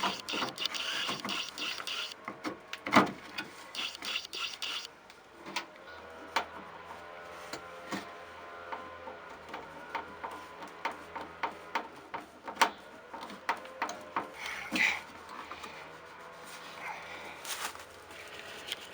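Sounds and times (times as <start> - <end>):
clicks and knocks of plastic parts: 0.0 - 4.9.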